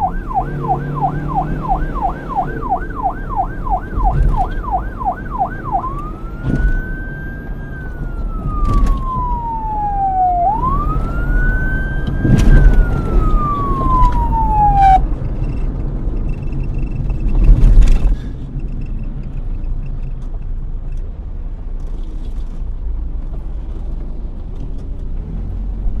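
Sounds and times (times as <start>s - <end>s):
police siren yelp and wail: 0.0s - 15.1s
low traffic rumble: 0.0s - 26.0s.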